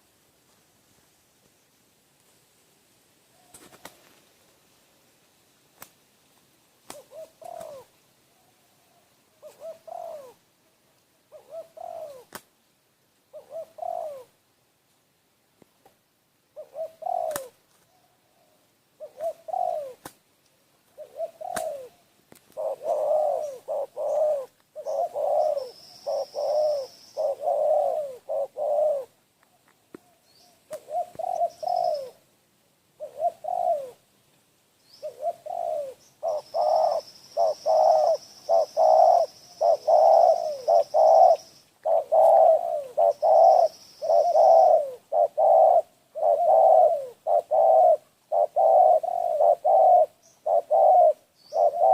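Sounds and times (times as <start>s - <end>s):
faint high hiss: 0.0s - 51.9s
dove cooing: 6.8s - 10.5s, 11.3s - 12.4s, 13.3s - 14.4s, 16.6s - 20.1s, 20.9s - 32.2s, 33.0s - 34.0s, 34.8s - 51.9s.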